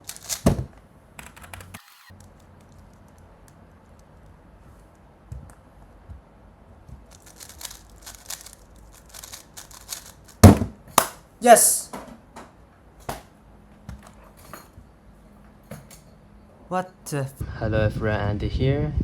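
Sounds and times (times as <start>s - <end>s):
speedcube layer-turn clicks: 0.0s - 0.5s, 1.2s - 5.6s, 7.0s - 10.4s.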